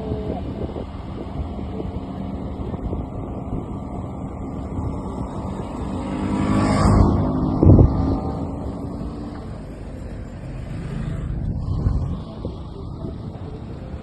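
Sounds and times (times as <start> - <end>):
wind noise: 0.0 - 14.0.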